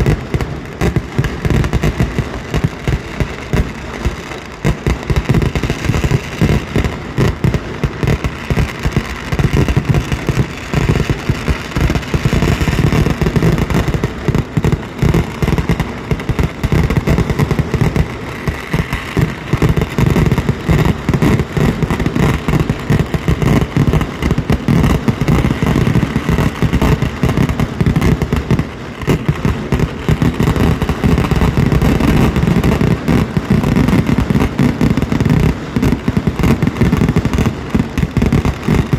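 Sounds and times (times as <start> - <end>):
firework explosions: 0.0 - 38.9.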